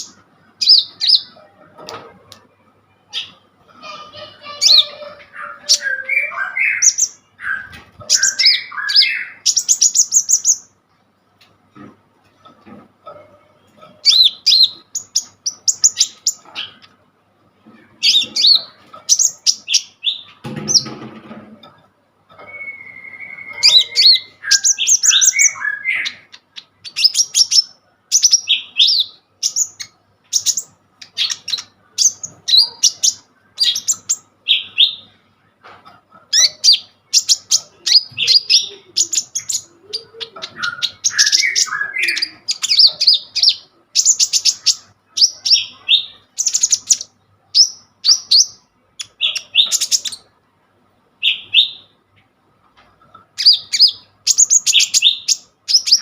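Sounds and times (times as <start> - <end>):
sunbird chirping and twittering: 0.0 - 1.6, 3.0 - 10.8, 13.0 - 17.0, 17.8 - 21.0, 22.4 - 35.2, 36.2 - 50.3, 53.3 - 56.0.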